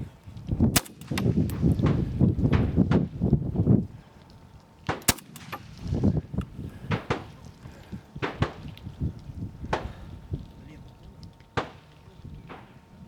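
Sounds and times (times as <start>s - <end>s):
rifle shots: 0.7s - 3.1s, 4.9s - 6.0s, 6.9s - 7.4s, 11.6s - 11.9s.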